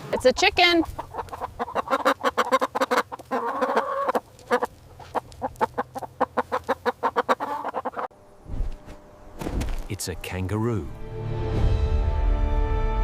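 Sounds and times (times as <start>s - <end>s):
chicken clucking: 0.0s - 8.1s.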